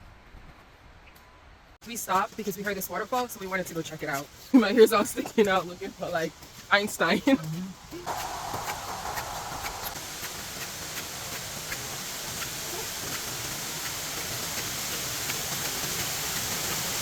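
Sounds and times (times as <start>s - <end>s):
waterfall roaring: 8.0s - 17.0s.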